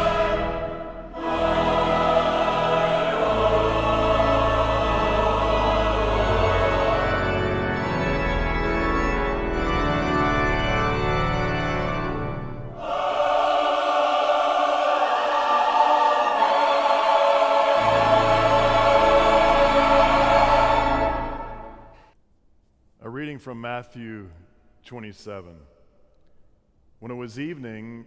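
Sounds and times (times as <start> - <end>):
choir singing a hymn: 0.0 - 10.0, 11.8 - 22.1
church organ: 0.0 - 22.2.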